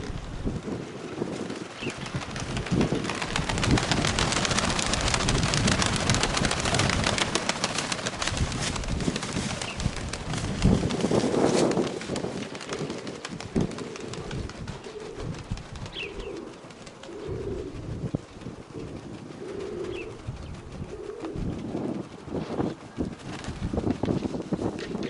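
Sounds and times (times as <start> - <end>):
wind buffeting microphone: 0.0 - 25.0.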